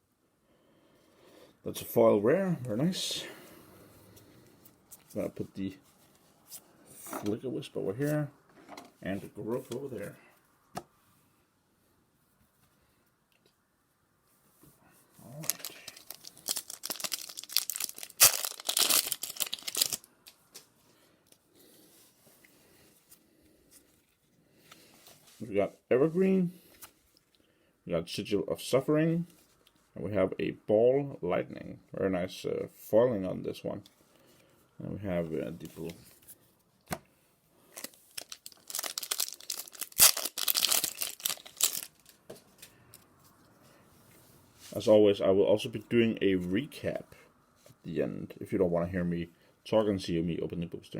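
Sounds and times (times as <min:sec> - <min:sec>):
foil wrapper tearing and crinkling: 0:15.3 - 0:20.1, 0:37.7 - 0:42.2.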